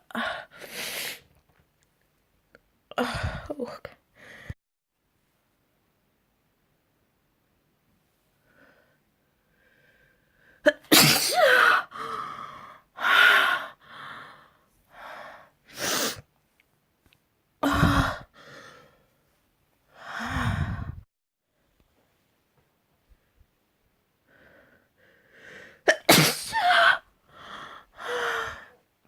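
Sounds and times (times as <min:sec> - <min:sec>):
person sneezing: 0:10.7 - 0:11.8, 0:25.9 - 0:27.0.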